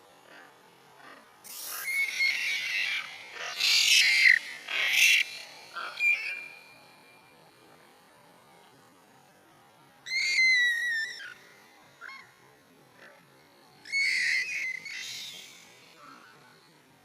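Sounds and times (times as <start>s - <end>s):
monkeys screaming: 1.0s - 6.7s, 10.1s - 11.4s, 13.8s - 16.4s
monkey squeak: 1.6s - 5.2s.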